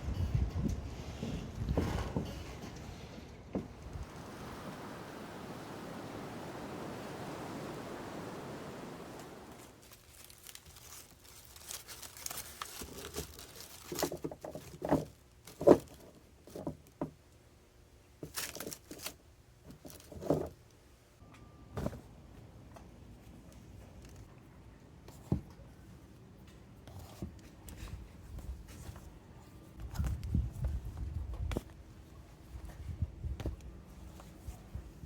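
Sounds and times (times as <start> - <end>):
steady rush of noise: 3.7 - 9.8.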